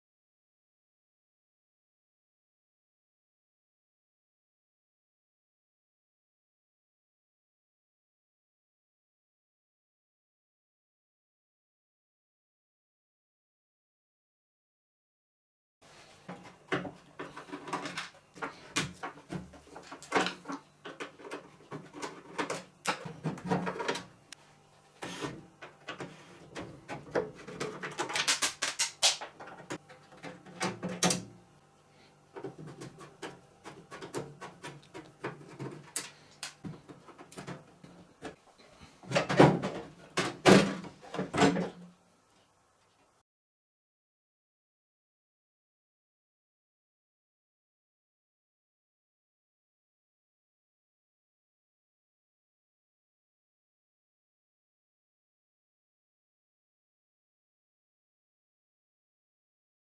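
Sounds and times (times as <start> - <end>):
faint steady hum: 15.8 - 43.2.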